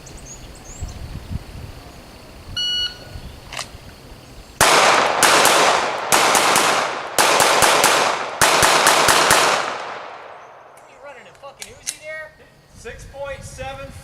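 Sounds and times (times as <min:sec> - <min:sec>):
pistol firing fast shots: 0:04.6 - 0:10.4.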